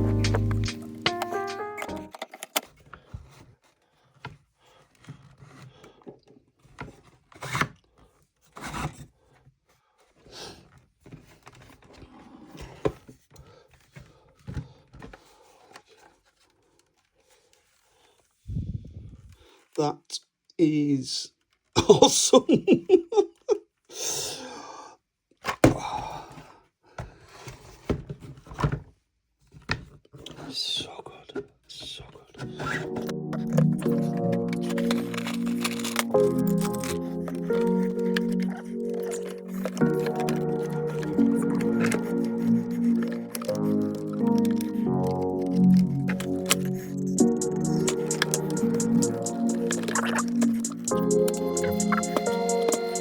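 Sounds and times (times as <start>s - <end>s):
handling clicks and knocks: 0.0s - 2.7s, 33.0s - 53.0s
breathy sound: 32.4s - 53.0s.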